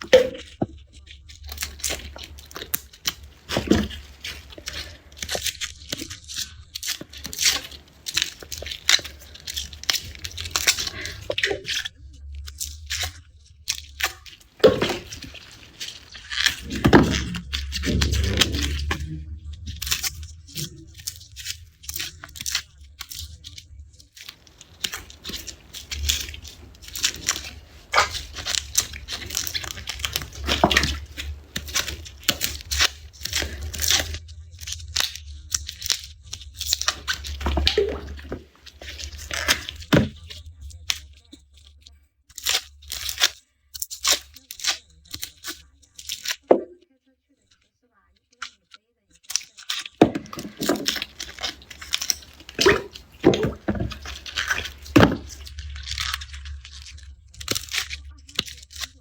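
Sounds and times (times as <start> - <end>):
garlic skins crackling and tearing: 1.5 - 11.8, 24.2 - 40.1, 42.4 - 45.3, 49.3 - 59.0.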